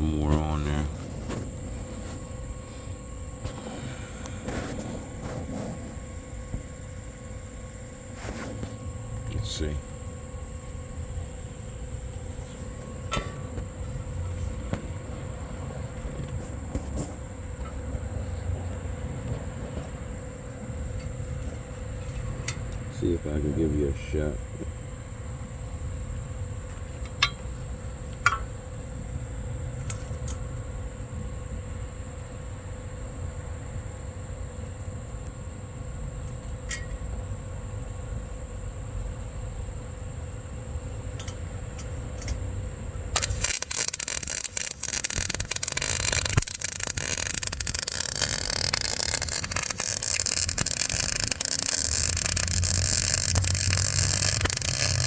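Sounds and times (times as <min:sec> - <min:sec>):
welding arc crackling and popping: 0:00.0 - 0:02.5, 0:26.6 - 0:30.3, 0:43.1 - 0:55.0
low hum: 0:00.0 - 0:23.3
thin high whine: 0:00.0 - 0:30.5, 0:43.1 - 0:55.0
faint ticks: 0:43.2 - 0:55.0.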